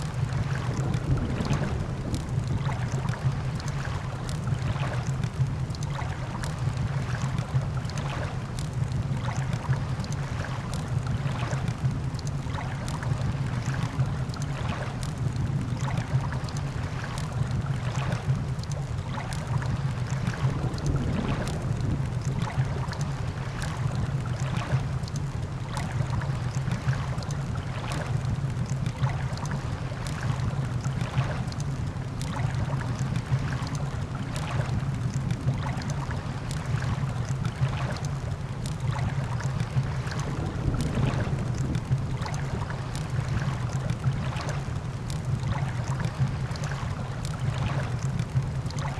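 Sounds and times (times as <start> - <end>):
campfire crackling and popping: 32.9 - 46.6.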